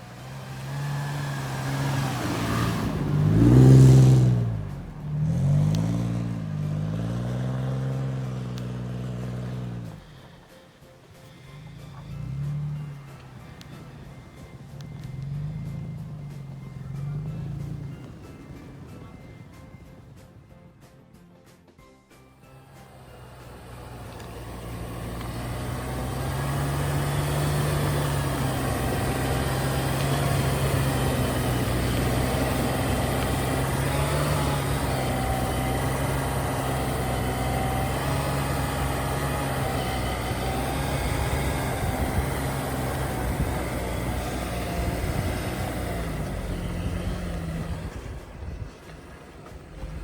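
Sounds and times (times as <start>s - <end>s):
off-road vehicle engine running: 0.0s - 50.0s.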